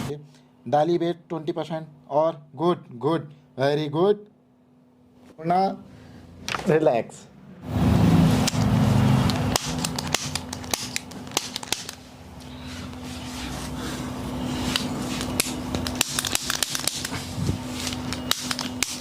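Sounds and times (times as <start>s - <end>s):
steady low hum: 0.0s - 19.0s
sharp clicks and cracks: 8.4s - 12.0s, 15.2s - 17.2s, 18.0s - 19.0s.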